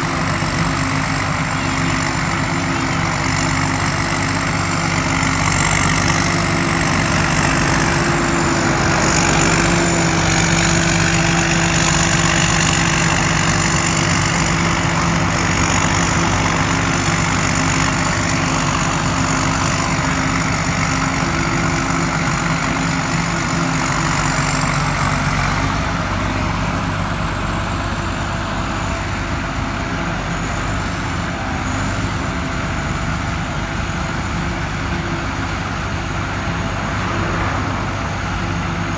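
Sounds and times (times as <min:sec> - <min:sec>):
rushing noise from blower: 0:00.0 - 0:27.4, 0:35.4 - 0:38.9
combine harvester running: 0:00.0 - 0:38.9
thin high whine: 0:36.3 - 0:38.9.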